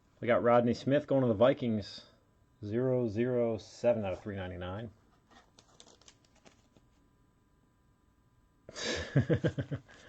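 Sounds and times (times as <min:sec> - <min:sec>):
trading cards being handled: 0:05.0 - 0:07.0.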